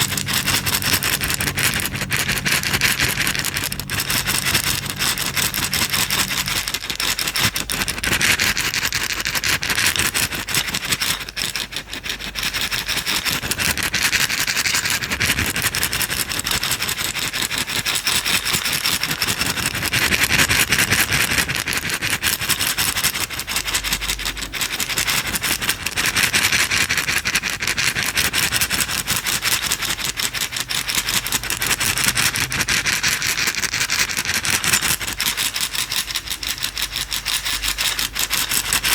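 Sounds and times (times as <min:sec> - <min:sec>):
small pieces rattling in shaken container: 0:00.0 - 0:38.9.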